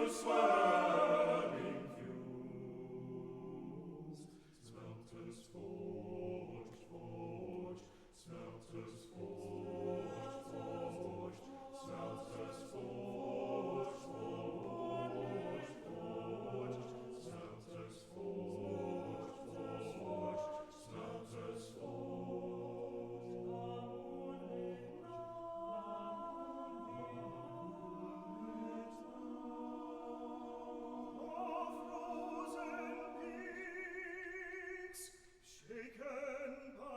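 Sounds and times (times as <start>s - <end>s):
men's chorus singing in harmony: 0.0s - 35.1s.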